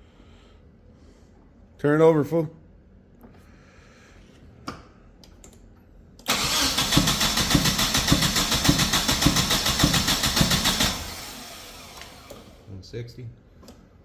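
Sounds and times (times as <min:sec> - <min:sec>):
engine cranking on starter motor: 0:06.2 - 0:12.7.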